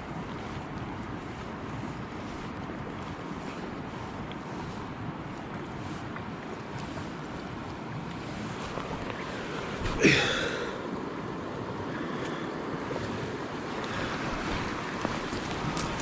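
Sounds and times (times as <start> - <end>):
stream water rushing: 0.0 - 16.0.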